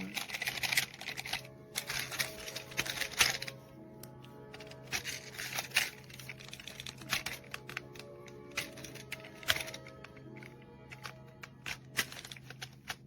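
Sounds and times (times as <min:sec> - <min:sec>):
music with sustained tones: 0:00.0 - 0:13.0.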